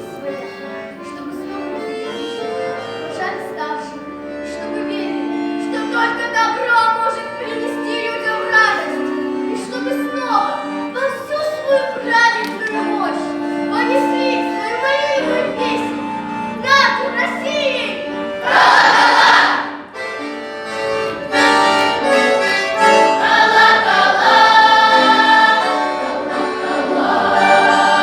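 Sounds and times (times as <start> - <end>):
youth choir singing folk song: 6.0 - 20.0, 21.3 - 28.0.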